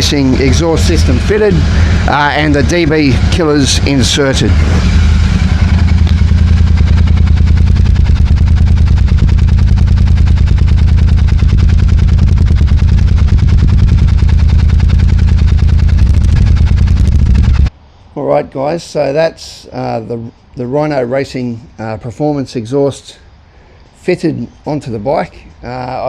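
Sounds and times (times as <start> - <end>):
motorcycle engine idling: 0.0 - 17.7.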